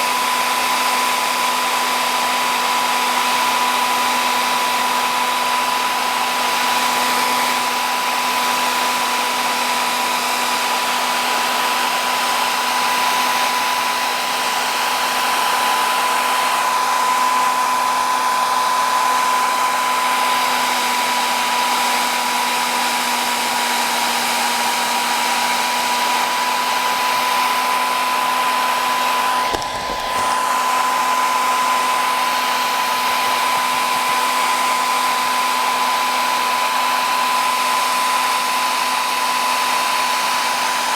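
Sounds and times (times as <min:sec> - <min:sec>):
electric blower whining: 0:29.2 - 0:31.2.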